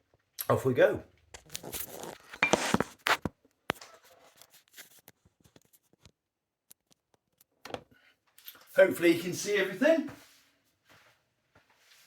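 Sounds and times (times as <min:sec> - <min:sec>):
rustling on kitchen worktop: 0:01.5 - 0:06.0.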